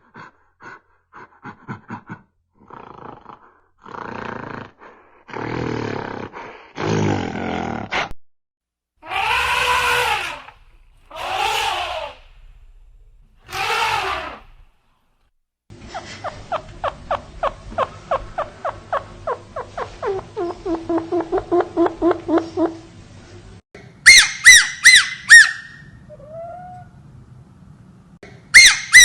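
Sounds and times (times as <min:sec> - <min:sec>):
drawn-out animal calls: 0:09.0 - 0:12.6, 0:13.5 - 0:14.6.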